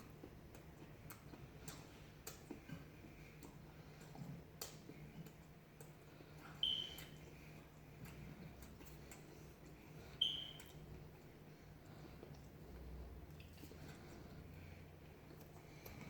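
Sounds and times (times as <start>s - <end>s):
chewing crunchy fried food: 0.0s - 16.0s
brief high squeak: 6.6s - 7.0s.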